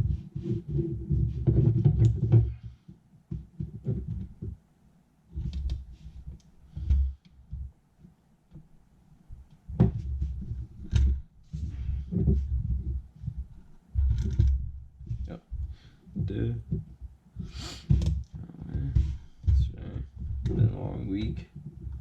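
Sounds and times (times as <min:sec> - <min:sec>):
low thumps and rubbing: 0:00.0 - 0:04.7, 0:09.3 - 0:22.0.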